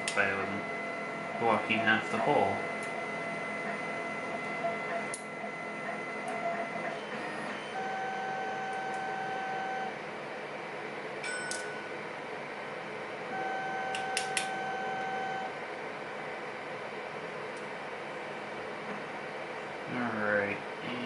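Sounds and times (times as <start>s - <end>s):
long electronic beeps: 7.0s - 10.0s, 13.3s - 15.5s.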